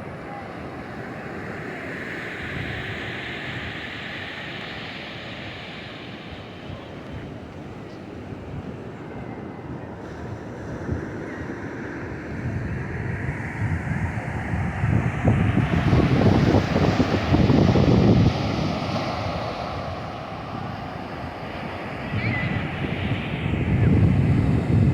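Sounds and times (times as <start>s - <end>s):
ocean surf breaking: 0.0s - 7.7s
wind buffeting microphone: 0.0s - 24.9s.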